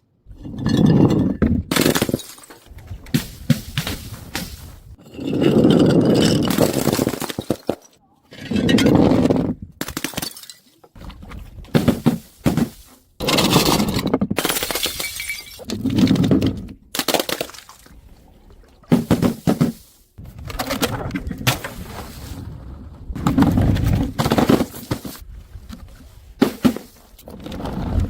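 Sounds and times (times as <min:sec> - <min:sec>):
glass bottles smashing: 0:00.5 - 0:02.7, 0:05.0 - 0:07.9, 0:09.8 - 0:10.8, 0:13.2 - 0:15.7
glass clinking and clattering: 0:14.7 - 0:15.6.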